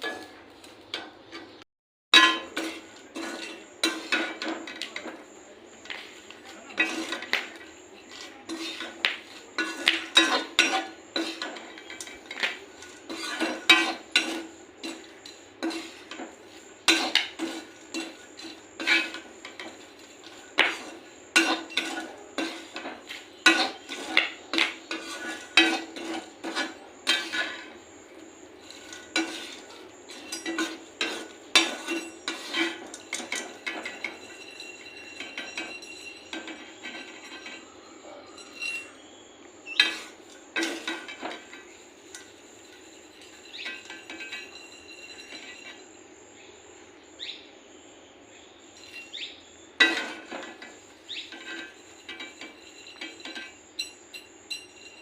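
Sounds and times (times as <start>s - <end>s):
spoon clinking and scraping metal pan: 0.0s - 39.1s, 39.7s - 45.9s, 48.8s - 55.0s.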